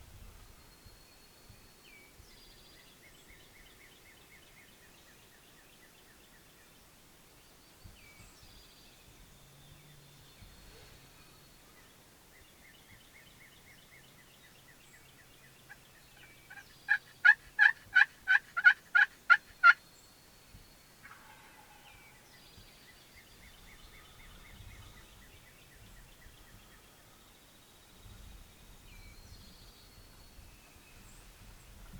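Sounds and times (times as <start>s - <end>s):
faint songbirds singing: 0.1s - 31.9s
turkey yelping: 16.5s - 19.8s.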